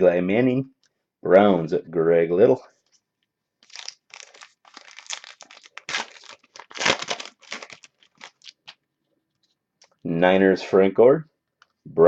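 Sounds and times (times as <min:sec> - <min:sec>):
wrapper crinkling and rustling: 0:03.6 - 0:08.8.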